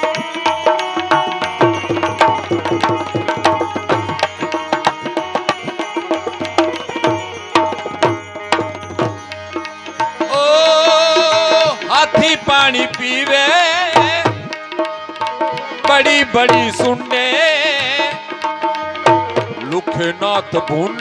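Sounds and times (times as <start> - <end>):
small cymbals: 0.0 - 12.4
held melody notes: 0.0 - 15.1
fast tabla strokes: 0.0 - 20.9.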